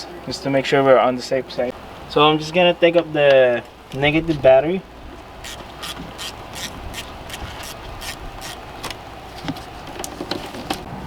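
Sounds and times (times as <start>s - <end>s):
ratchet clicking: 5.4s - 9.0s.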